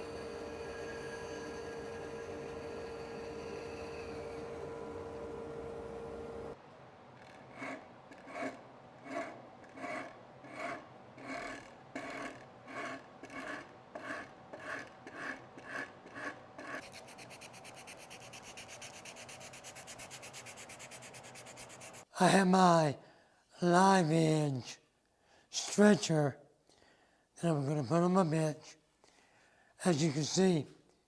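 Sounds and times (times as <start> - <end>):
hand tool rasping wood: 13.4 - 22.1.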